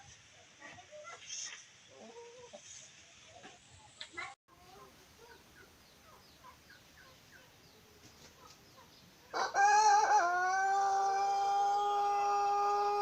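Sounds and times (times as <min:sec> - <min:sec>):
rooster crowing: 0:09.3 - 0:13.0.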